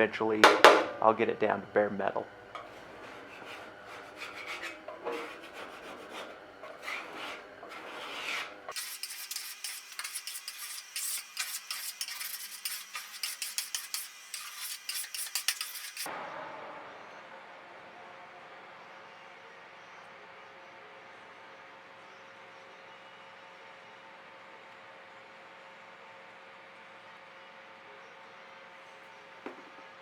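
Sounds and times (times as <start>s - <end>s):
hand scraping steel desk top: 2.6s - 16.1s.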